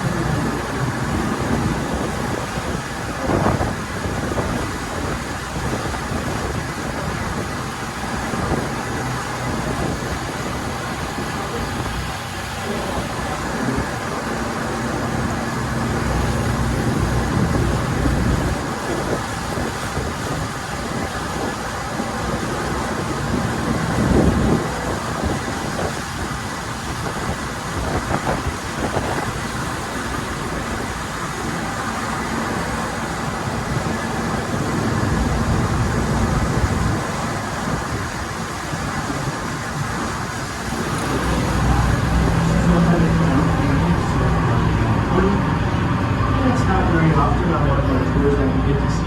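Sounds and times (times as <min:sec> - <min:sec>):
boat engine drone: 0:00.0 - 0:49.0
wind and water rushing: 0:00.0 - 0:49.0.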